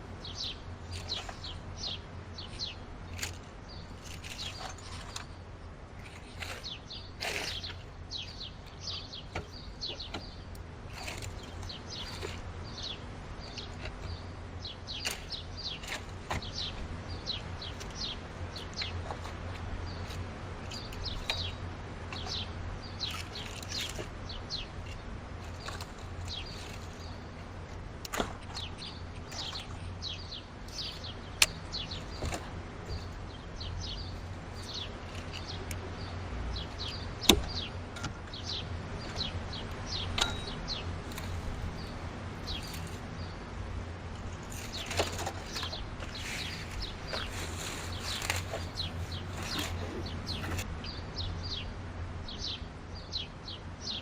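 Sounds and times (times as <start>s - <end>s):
steady low hum: 0.0s - 53.6s
small birds chirping: 0.0s - 54.0s.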